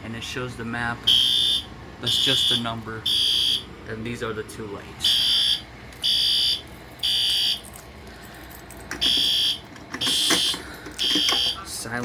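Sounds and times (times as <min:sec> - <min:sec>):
fire alarm horn beeps: 0:01.1 - 0:03.7, 0:05.0 - 0:07.7, 0:09.0 - 0:11.7.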